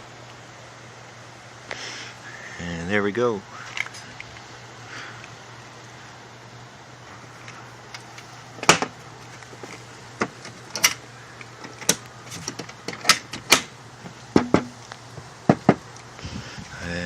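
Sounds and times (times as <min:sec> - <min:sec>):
sharp knocks and clicks: 0:14.3 - 0:14.8, 0:15.5 - 0:15.8.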